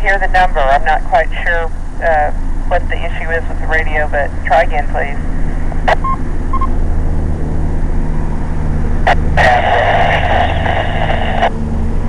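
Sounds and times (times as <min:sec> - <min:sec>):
radio static hiss: 0:00.0 - 0:05.2, 0:05.8 - 0:06.1, 0:09.0 - 0:11.6
low steady hum: 0:00.0 - 0:12.0
radio click: 0:05.9 - 0:06.1
short beep tone: 0:06.0 - 0:06.7.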